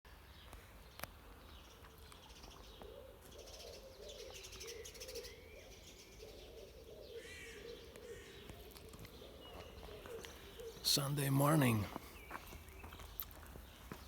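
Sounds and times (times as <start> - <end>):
songbirds chirping and trilling: 0.1 - 14.0
low repeated bird call: 1.7 - 13.9.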